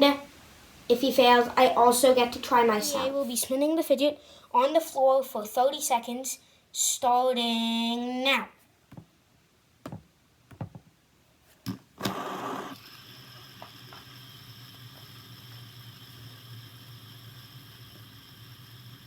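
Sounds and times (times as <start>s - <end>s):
fidget spinner whirring: 12.0s - 19.0s.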